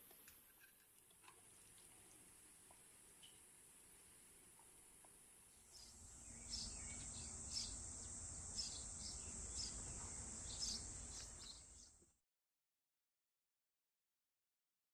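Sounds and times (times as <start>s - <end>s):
steady high hiss: 1.4s - 12.0s.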